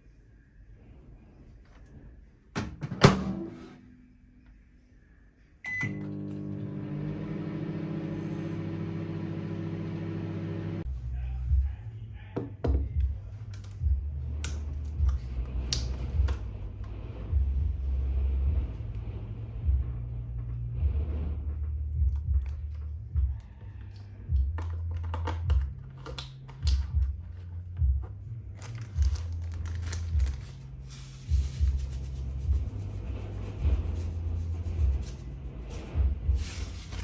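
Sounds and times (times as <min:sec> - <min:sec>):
microwave oven humming: 0:05.6 - 0:10.8
low rumbling: 0:06.8 - 0:37.0.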